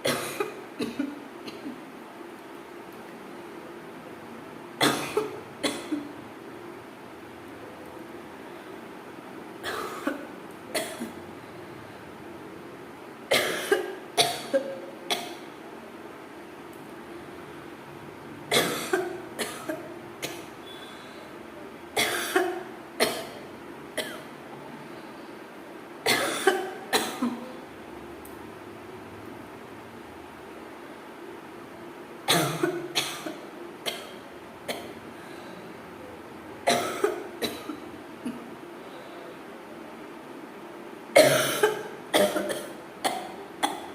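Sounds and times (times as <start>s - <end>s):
person coughing: 0.0s - 1.8s, 4.8s - 6.1s, 9.6s - 11.2s, 13.3s - 15.4s, 18.5s - 20.4s, 22.0s - 23.4s, 26.1s - 27.6s, 32.3s - 34.9s, 36.7s - 38.5s, 41.2s - 43.9s.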